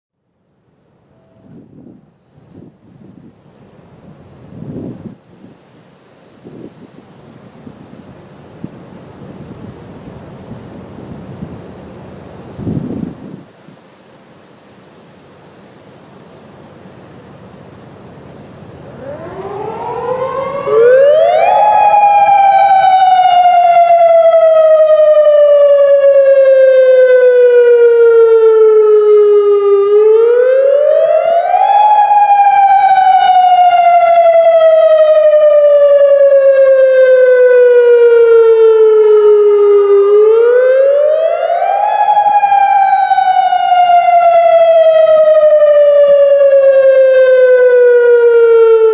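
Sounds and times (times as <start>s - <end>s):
electronic warning siren wailing: 17.4s - 48.9s.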